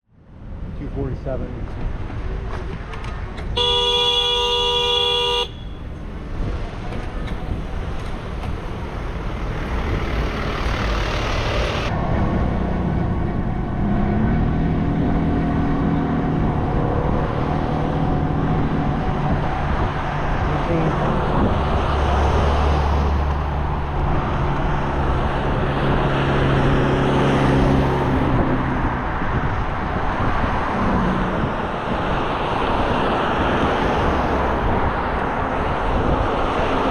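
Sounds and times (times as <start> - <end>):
road traffic noise: 0.1 - 36.9
vehicle engine humming: 0.4 - 36.6
vehicle horn honk: 3.6 - 5.8
wind on microphone: 6.3 - 36.9.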